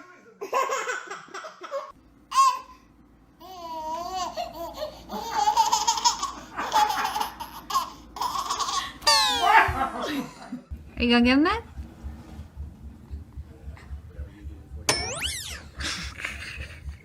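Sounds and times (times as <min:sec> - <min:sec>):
baby laughing: 0:03.4 - 0:09.8.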